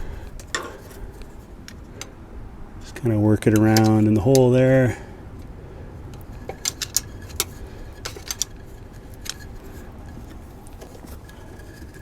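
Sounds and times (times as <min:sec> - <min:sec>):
low steady hum: 0:00.0 - 0:12.0
screwdriver clicking and scraping: 0:03.4 - 0:04.5, 0:06.1 - 0:12.0.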